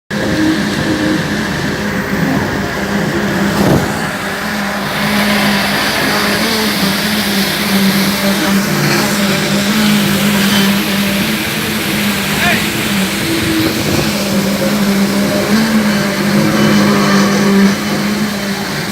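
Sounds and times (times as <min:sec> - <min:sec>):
boat engine humming: 0:00.1 - 0:18.9.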